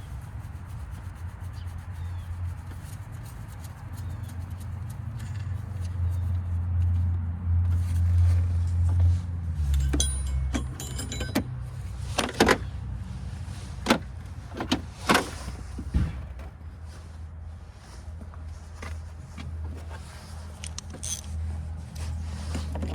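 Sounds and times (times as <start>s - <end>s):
metal hand tools clinking: 9.6s - 11.6s, 20.6s - 21.4s
metallic rattle: 9.6s - 12.7s, 20.6s - 21.4s.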